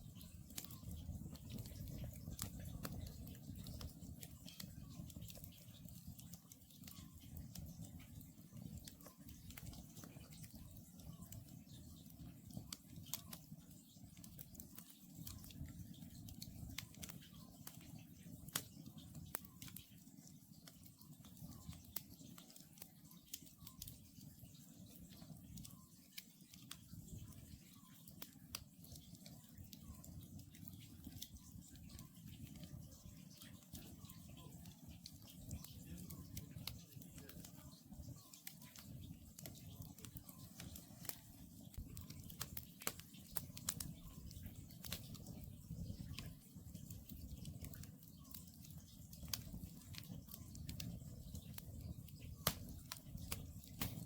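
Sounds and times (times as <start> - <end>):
low rumble of flames: 0.0 - 25.6, 26.6 - 54.0
campfire pops and snaps: 0.1 - 54.0.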